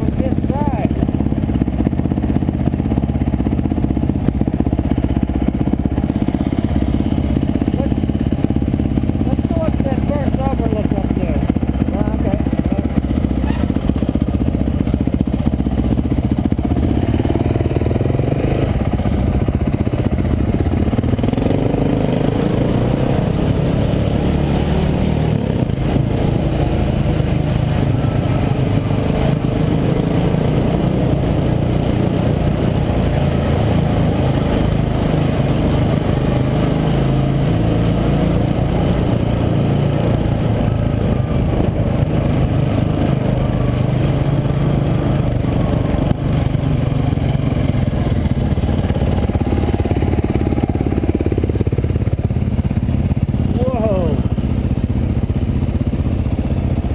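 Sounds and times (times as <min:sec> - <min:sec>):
dirt bike engine revving: 0:00.0 - 0:54.4.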